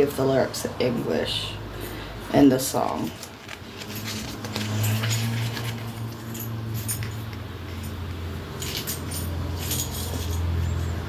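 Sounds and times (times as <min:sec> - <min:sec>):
booklet pages turning: 0:03.3 - 0:05.9.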